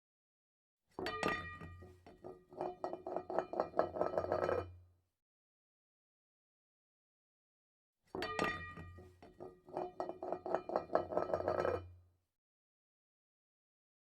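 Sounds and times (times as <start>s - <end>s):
clinks and taps with ringing tones: 1.0s - 4.6s, 8.2s - 11.8s.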